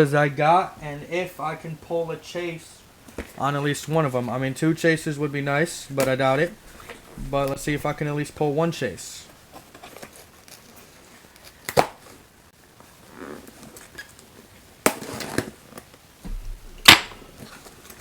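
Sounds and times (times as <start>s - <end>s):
packaging knocks and scrapes: 5.7s - 8.5s
low thump: 5.7s - 8.6s, 16.2s - 17.4s.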